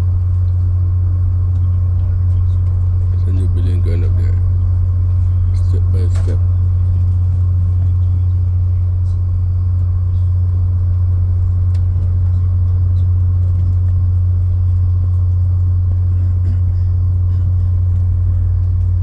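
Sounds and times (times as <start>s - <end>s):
train rumbling inside carriage: 0.0s - 19.0s.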